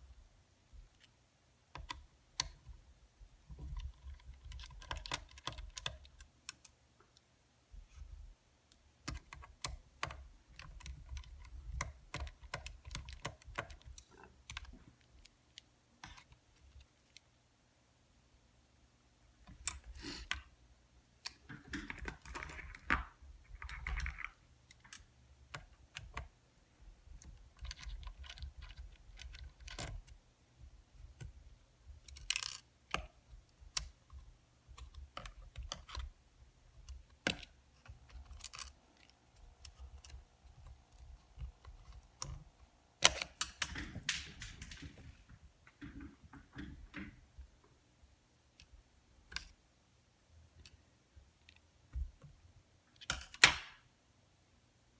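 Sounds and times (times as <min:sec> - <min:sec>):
plastic and metal parts clicking: 0:32.0 - 0:36.1, 0:36.8 - 0:44.9.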